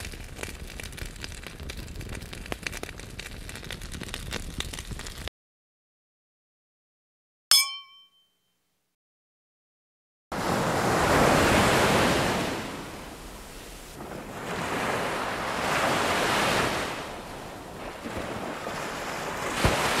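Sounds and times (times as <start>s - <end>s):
waves washing in and receding: 10.3s - 20.0s.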